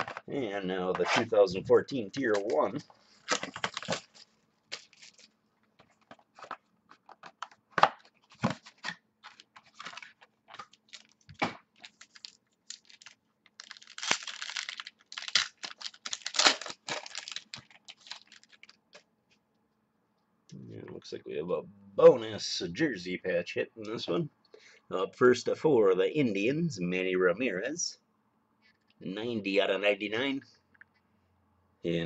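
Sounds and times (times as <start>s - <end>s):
wrapper tearing and crinkling: 2.2s - 5.4s, 8.3s - 18.8s.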